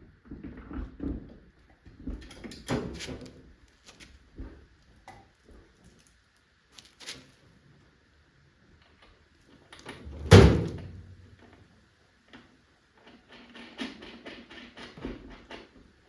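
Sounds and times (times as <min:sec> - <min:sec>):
hardware clunking and rattling: 0:10.0 - 0:11.1.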